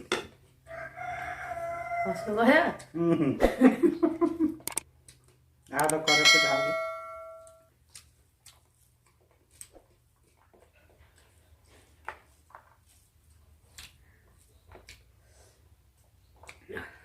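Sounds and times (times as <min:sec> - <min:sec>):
chewing clicks and smacks: 0:04.6 - 0:06.0, 0:07.8 - 0:11.4, 0:13.6 - 0:15.1, 0:16.3 - 0:16.7
low steady hum: 0:05.9 - 0:07.7.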